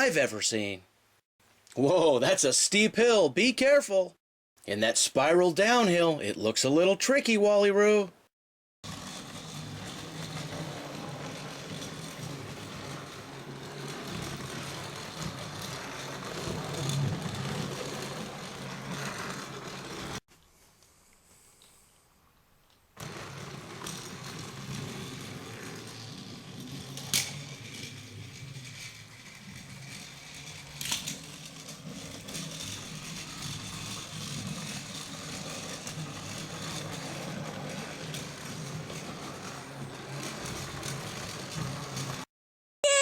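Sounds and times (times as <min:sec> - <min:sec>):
toy train motor whirring: 0:08.8 - 0:20.2, 0:23.0 - 0:43.0.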